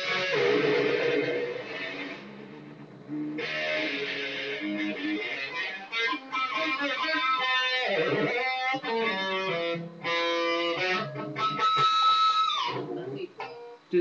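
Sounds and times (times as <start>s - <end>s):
electric guitar sound effects: 0.0s - 14.0s.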